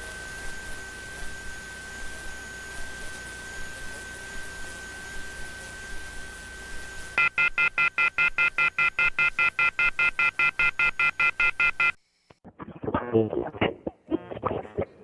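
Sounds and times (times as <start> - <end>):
telephone off-hook warning beeps: 7.2 - 12.0.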